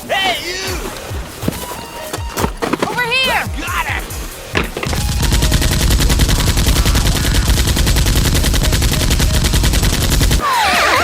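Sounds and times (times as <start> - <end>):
rapid automatic gunfire: 4.9 - 10.4.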